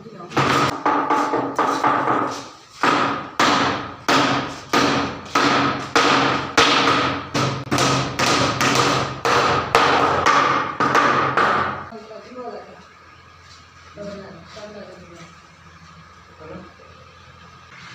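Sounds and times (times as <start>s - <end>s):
hammer blows ringing: 0.4s - 11.9s.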